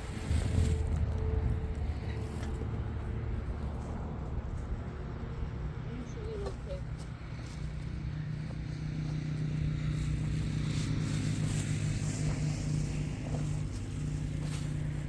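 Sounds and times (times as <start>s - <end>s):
engine humming: 0.0s - 15.0s.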